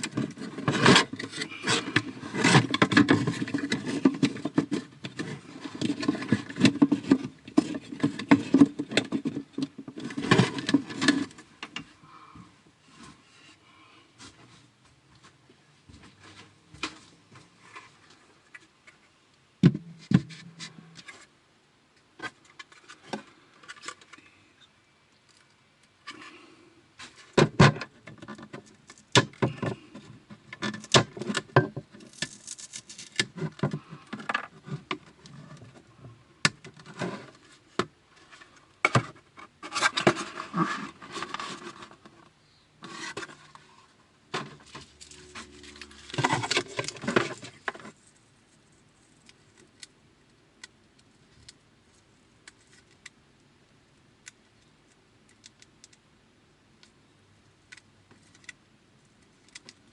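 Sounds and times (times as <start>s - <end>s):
clicks and knocks of objects: 0.0s - 11.9s, 44.3s - 48.1s.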